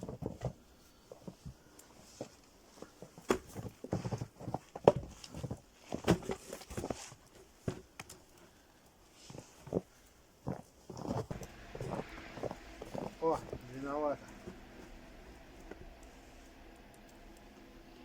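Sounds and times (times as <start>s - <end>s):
wooden knocks and thuds of logs: 0.0s - 8.2s.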